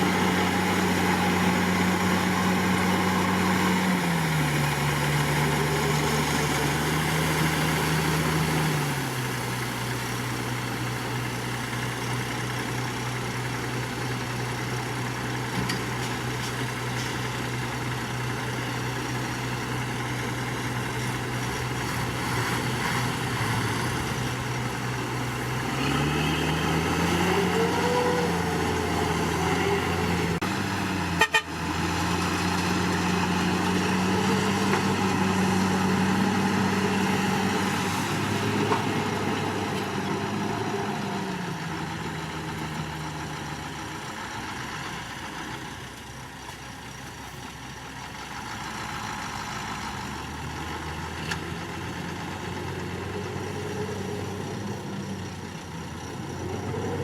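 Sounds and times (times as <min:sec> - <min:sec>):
bulldozer diesel engine running: 0:00.0 - 0:57.0.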